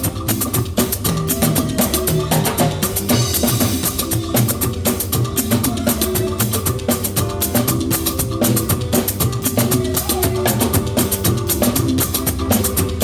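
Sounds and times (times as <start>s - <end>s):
drums and shakers beat: 0.0s - 13.0s.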